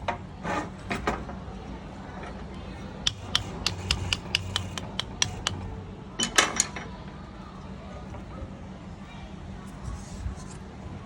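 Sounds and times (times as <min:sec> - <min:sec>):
steady low hum: 0:01.8 - 0:06.2
sharp metallic clicks: 0:03.1 - 0:05.6.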